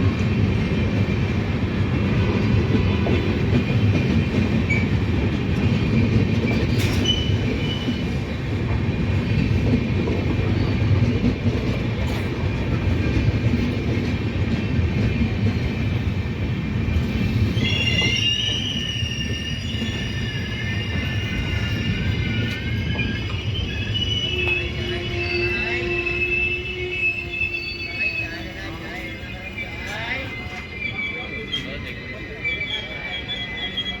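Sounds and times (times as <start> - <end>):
train wheels rumbling on rails: 0.0 - 34.0
high wavering squealing tones: 17.1 - 34.0
brake squeal: 17.3 - 34.0.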